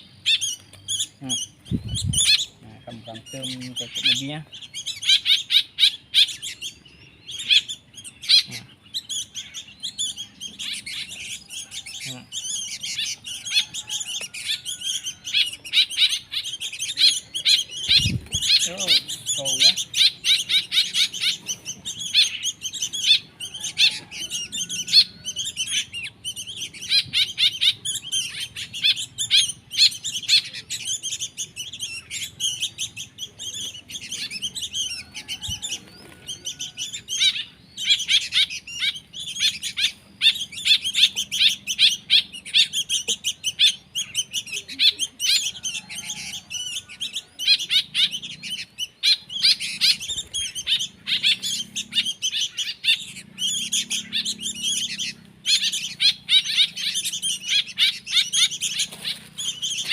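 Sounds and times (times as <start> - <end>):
songbird chicks chirping: 0.0 - 59.9.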